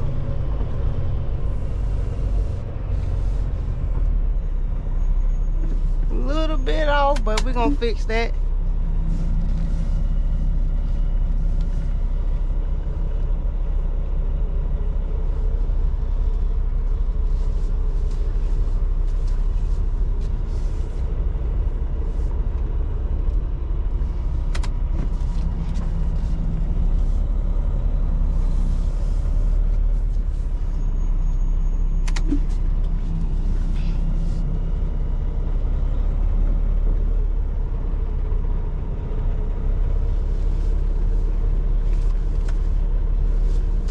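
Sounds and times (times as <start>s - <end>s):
diesel truck engine running: 0.0s - 43.9s.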